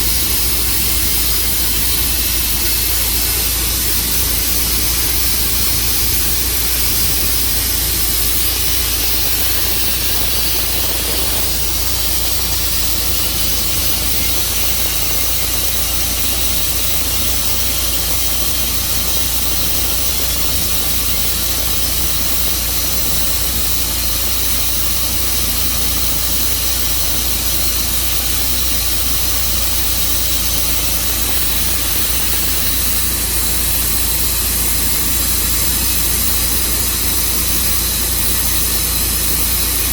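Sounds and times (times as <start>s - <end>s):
sawmill sawing log: 3.0s - 23.6s.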